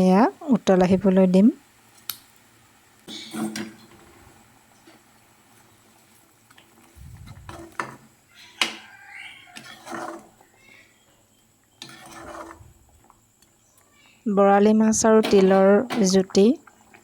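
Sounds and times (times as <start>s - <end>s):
soft scraping: 6.8s - 10.5s, 11.8s - 13.2s.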